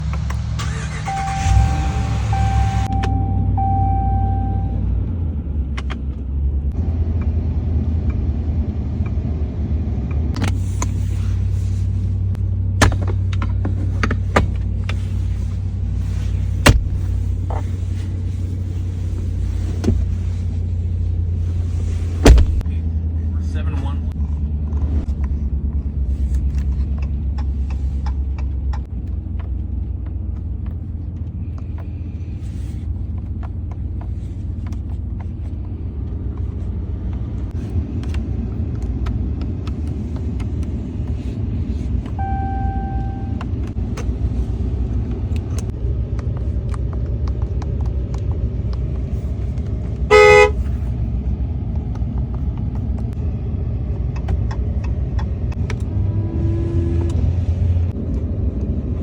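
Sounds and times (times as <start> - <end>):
pickup engine rumbling: 0.0 - 59.0
vehicle horn honk: 50.1 - 50.6.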